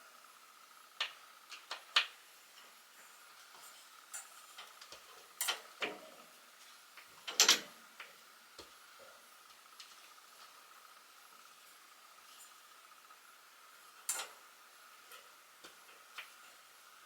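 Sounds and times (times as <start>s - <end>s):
clicks and knocks of rack: 7.3s - 7.7s.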